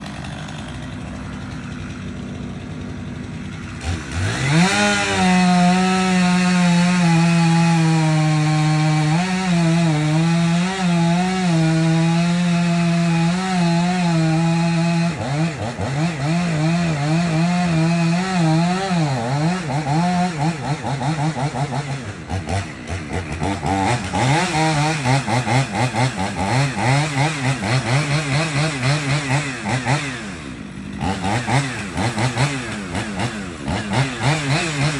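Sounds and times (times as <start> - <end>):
chainsaw revving: 0.0 - 34.9.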